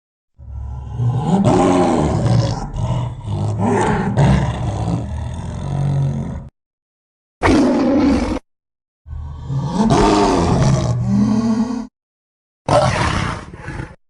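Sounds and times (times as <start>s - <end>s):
big cat roaring: 0.4s - 6.5s, 7.4s - 8.4s, 9.1s - 11.9s, 12.7s - 14.0s.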